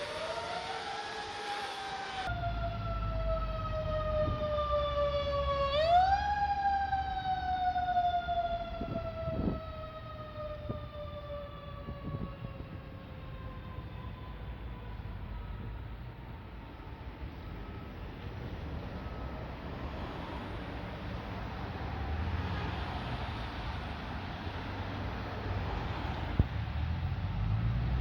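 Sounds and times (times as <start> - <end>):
fire engine siren winding: 0.0 - 15.7.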